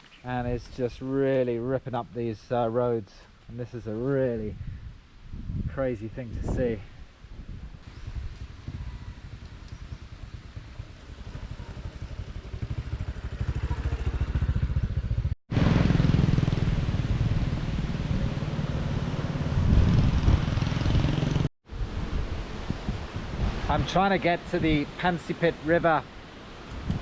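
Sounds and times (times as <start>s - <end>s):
vehicle engine rumbling: 7.8s - 27.0s.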